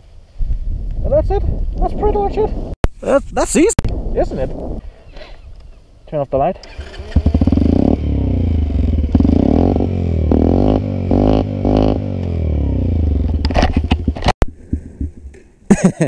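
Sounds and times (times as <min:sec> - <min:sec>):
small motorcycle engine rumbling: 0:06.6 - 0:14.3.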